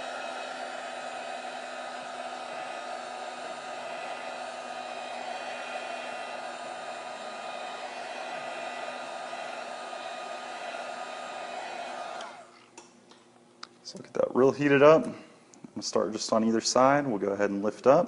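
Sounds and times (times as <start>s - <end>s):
heat gun blowing: 0.0s - 12.6s.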